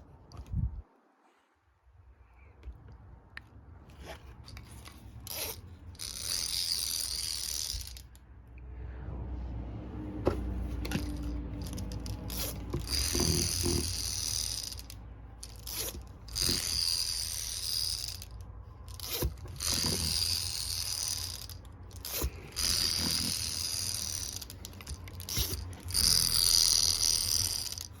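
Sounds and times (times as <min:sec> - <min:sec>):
toy jittering and jingling: 0:04.8 - 0:08.1, 0:10.8 - 0:28.0.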